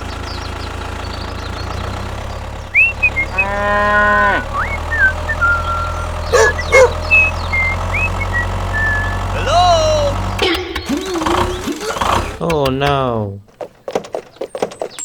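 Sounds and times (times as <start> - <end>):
small engine humming: 0.0 - 13.1
short high chirps: 2.8 - 3.5, 4.5 - 9.3
cow mooing: 2.8 - 9.8
sharp clicks: 10.2 - 15.0.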